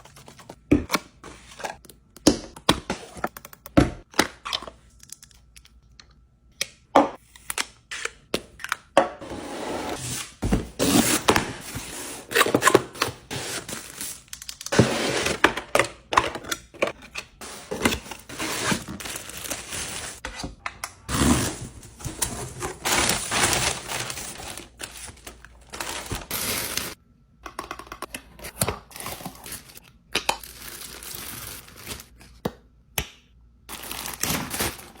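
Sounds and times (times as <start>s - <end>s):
packaging crinkling and tearing: 17.6s - 20.2s, 21.1s - 27.0s, 29.0s - 32.2s, 33.7s - 35.0s.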